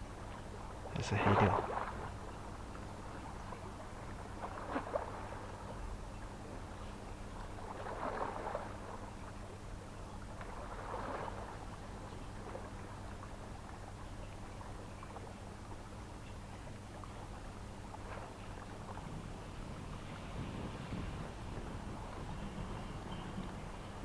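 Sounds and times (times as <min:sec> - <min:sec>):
steady low hum: 0:00.0 - 0:24.0
waves washing against shore: 0:00.9 - 0:02.1.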